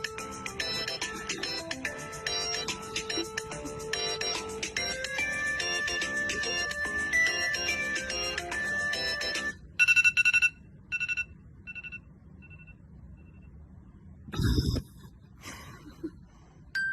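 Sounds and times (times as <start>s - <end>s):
electronic alarm ringtone melody: 0.0s - 12.8s.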